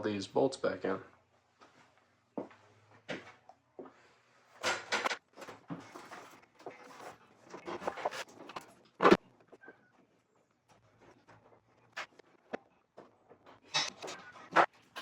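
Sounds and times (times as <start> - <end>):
clicks knocks and scrapes of hand work: 4.6 - 15.0.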